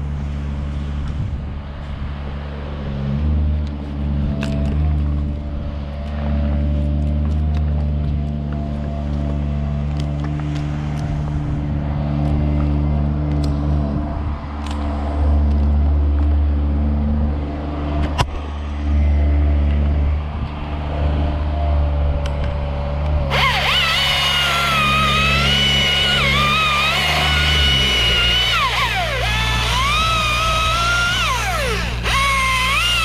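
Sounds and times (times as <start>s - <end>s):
engine idling: 23.3s - 33.0s.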